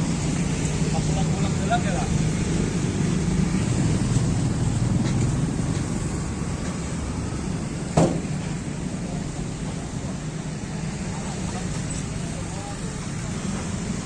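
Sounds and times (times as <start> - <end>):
street traffic engines rumbling: 0.0 - 14.0
sharp knock: 8.0 - 8.3.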